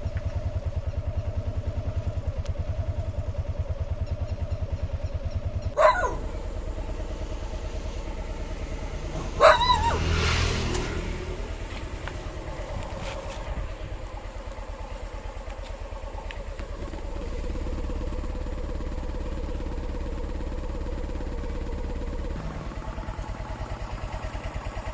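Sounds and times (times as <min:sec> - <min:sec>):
small engine idling: 0:00.0 - 0:24.9
dog barking: 0:05.8 - 0:06.4, 0:09.3 - 0:10.1.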